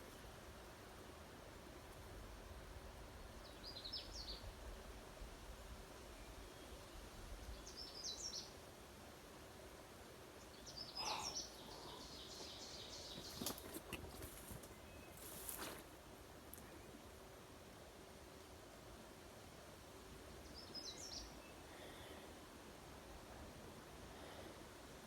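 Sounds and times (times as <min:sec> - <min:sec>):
songbird singing: 0:03.1 - 0:04.6, 0:06.1 - 0:08.7, 0:10.3 - 0:15.8, 0:20.2 - 0:22.2.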